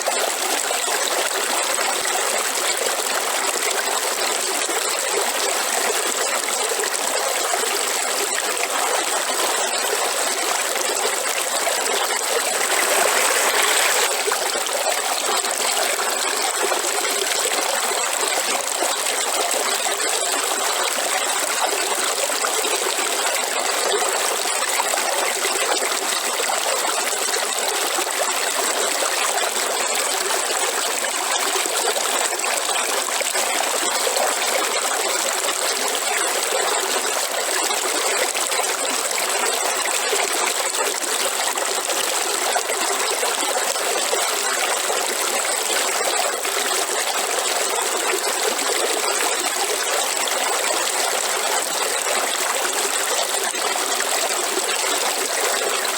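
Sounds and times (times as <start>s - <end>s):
river water rushing over rocks: 12.2s - 14.8s.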